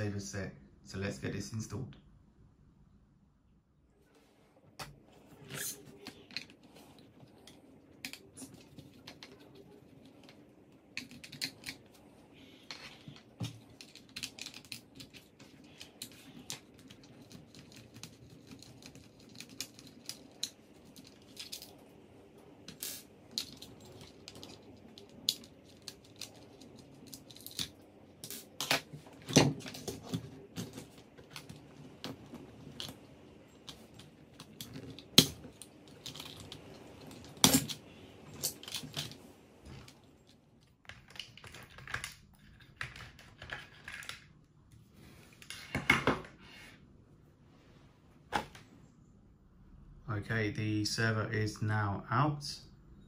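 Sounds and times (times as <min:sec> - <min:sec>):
screws and plastic parts clattering: 0:05.4 - 0:22.0, 0:22.6 - 0:44.4.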